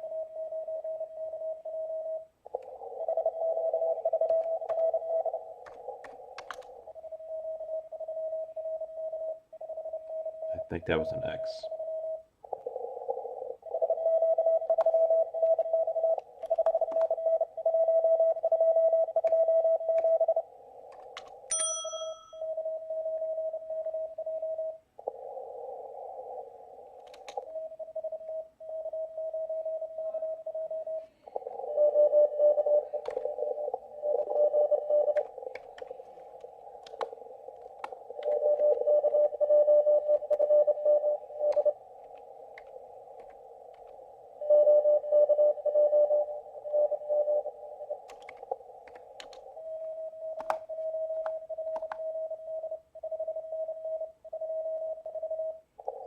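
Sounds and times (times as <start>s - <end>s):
morse code tone: 0.0s - 6.0s, 6.6s - 20.5s, 27.1s - 56.0s
clicks: 4.1s - 6.8s, 14.7s - 17.4s, 19.2s - 22.2s, 26.9s - 27.6s, 32.6s - 39.3s, 41.4s - 44.1s, 47.9s - 52.2s
radio hiss: 10.5s - 11.9s, 30.0s - 50.1s.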